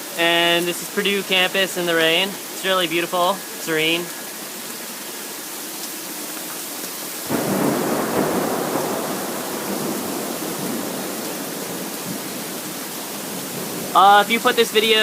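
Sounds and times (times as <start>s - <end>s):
heavy rain: 0.0s - 15.0s
thunder rolling: 7.3s - 14.0s.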